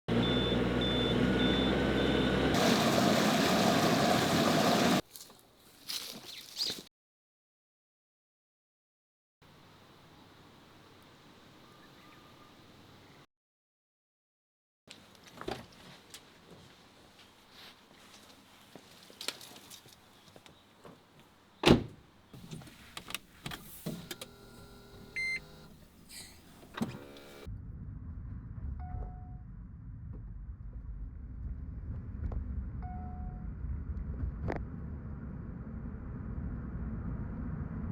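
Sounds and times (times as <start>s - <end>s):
motor humming: 0.1s - 5.0s, 22.4s - 27.5s
steady low rumble: 27.5s - 37.9s.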